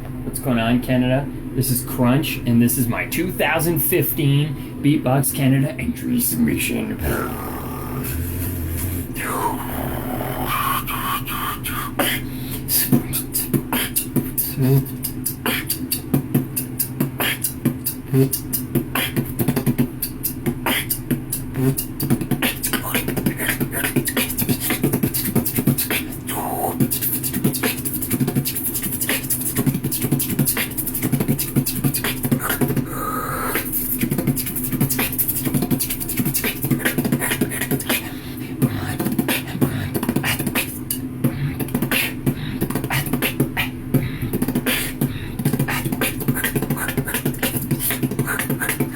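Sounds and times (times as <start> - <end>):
low hummed tone: 1.2 - 19.1, 34.6 - 48.9
person beatboxing: 5.2 - 48.9
vocal pitch glides: 6.8 - 48.9.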